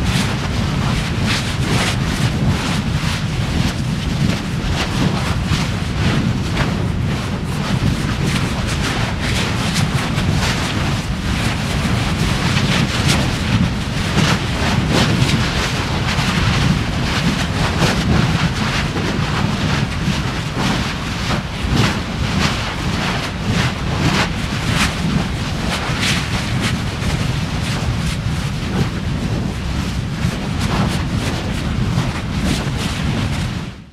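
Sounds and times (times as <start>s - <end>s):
low rumble of lava: 0.0s - 33.9s.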